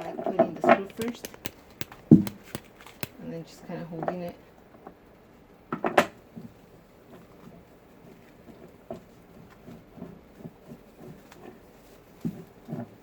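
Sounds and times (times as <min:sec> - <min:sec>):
soft taps and rubbing: 0:00.7 - 0:03.2.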